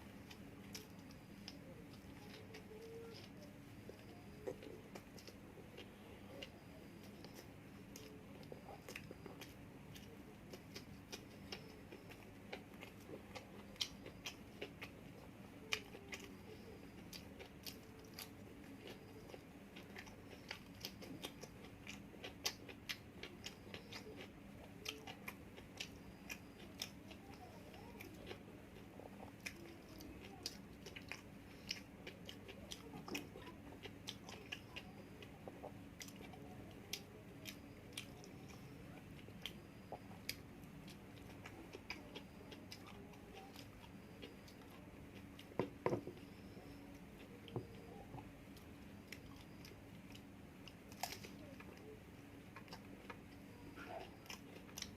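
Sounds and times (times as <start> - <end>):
person chewing food: 0.0 - 54.9.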